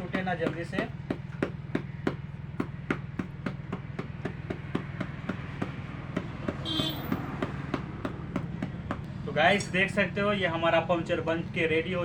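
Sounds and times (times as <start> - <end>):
hammer tapping rubber patch: 0.0 - 9.1.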